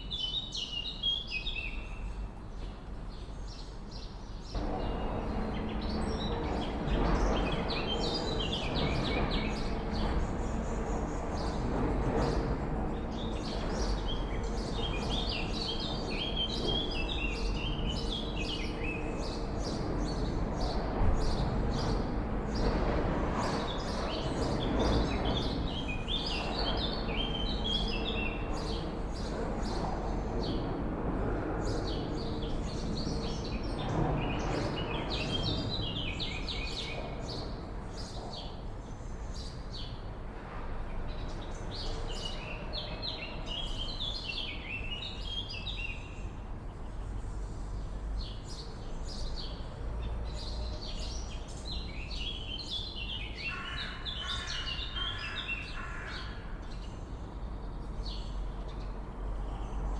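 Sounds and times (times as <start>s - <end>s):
low background rumble: 4.6s - 11.9s
swallows twittering: 4.6s - 22.0s, 23.4s - 30.8s.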